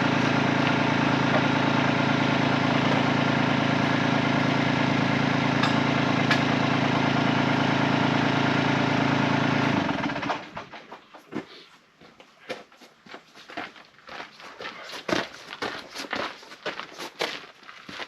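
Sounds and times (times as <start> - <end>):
tractor diesel engine running: 0.0 - 10.8.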